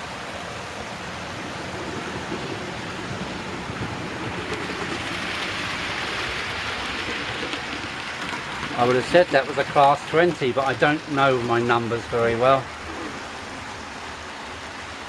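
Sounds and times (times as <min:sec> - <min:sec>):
model train wheels on rails: 0:00.0 - 0:15.0
model train motors running: 0:00.6 - 0:14.1.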